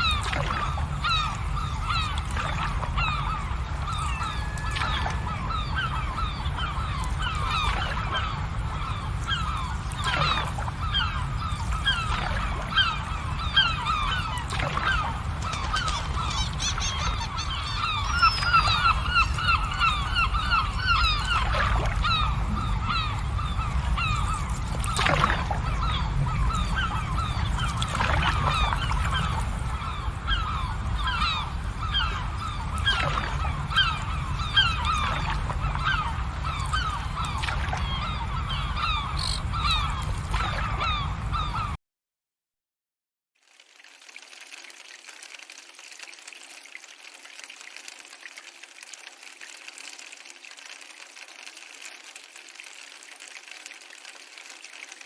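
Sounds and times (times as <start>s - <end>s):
flock of birds calling: 0.0s - 41.8s.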